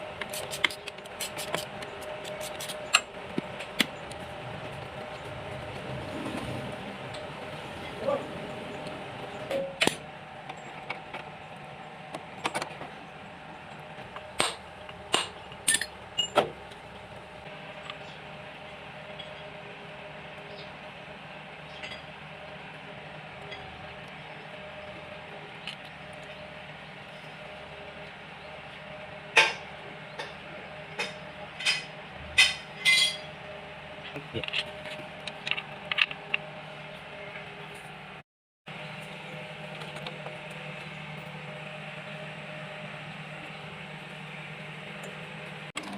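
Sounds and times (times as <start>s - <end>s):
metal tools clinking and knocking: 31.0s - 33.3s.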